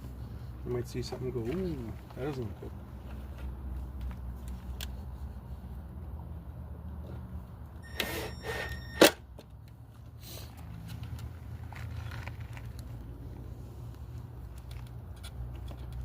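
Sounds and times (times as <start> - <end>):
short beep tone: 7.8 - 9.1.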